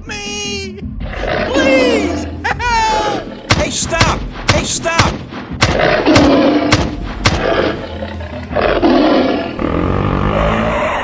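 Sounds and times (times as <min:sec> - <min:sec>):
sharp bangs: 0:03.5 - 0:07.8
roaring growls: 0:05.7 - 0:06.8, 0:07.4 - 0:11.0.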